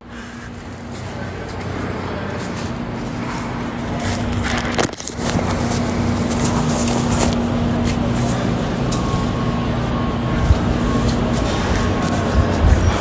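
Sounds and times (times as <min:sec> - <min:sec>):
machinery hum: 0:00.0 - 0:13.0.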